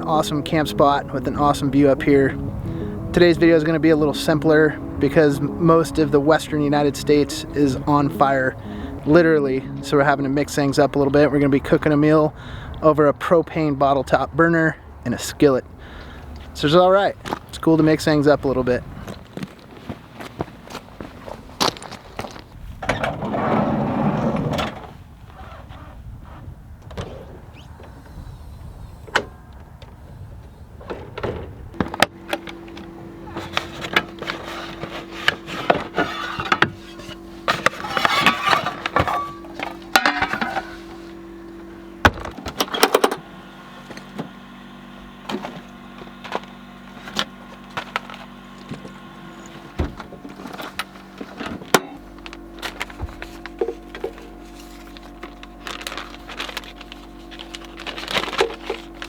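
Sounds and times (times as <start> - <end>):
background music with held tones: 0.0 - 12.3, 32.0 - 42.1
loud rustling: 31.8 - 41.2.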